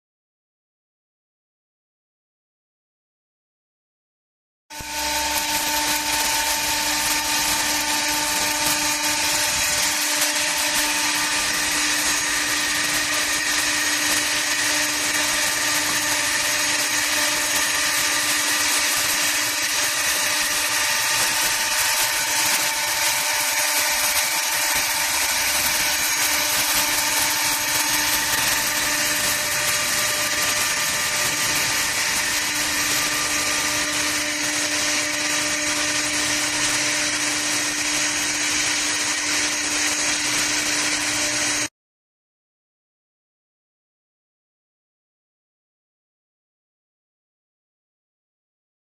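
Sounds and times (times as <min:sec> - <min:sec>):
lathe motor whine: 0:04.7 - 0:41.7.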